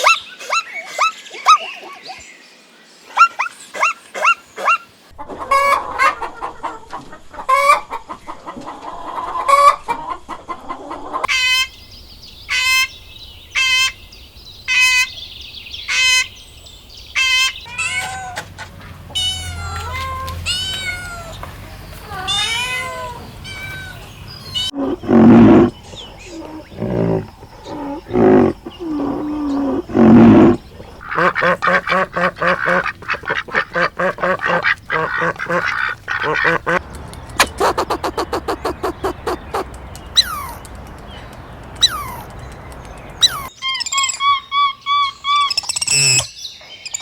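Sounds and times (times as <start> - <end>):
animal calls: 22.1 - 40.8, 41.8 - 42.4, 43.2 - 46.3.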